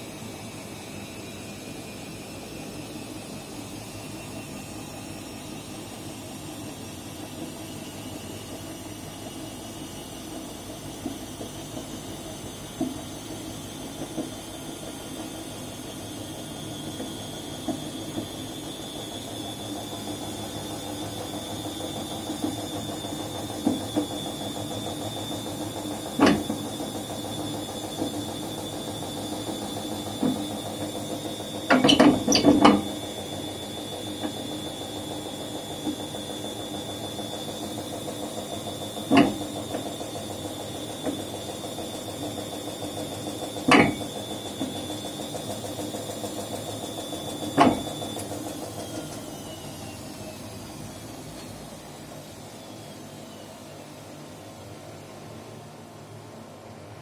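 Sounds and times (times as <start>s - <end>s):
washing machine humming: 0.0s - 57.0s
washing machine knocking and rattling: 6.8s - 16.0s, 16.6s - 49.4s.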